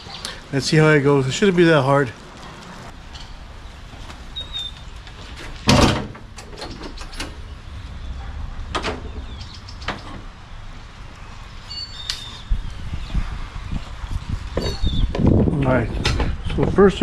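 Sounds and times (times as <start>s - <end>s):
loud drawn-out clunk: 5.6s - 7.4s.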